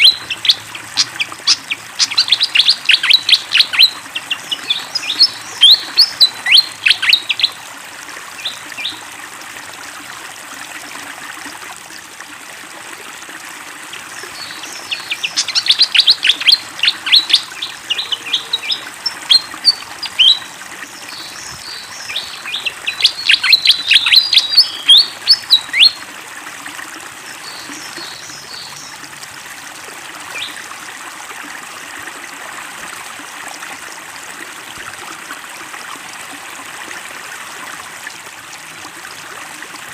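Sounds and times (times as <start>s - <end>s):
bird chirping: 0.0s - 7.6s, 14.4s - 20.5s, 21.1s - 26.0s
flowing water: 0.0s - 39.9s.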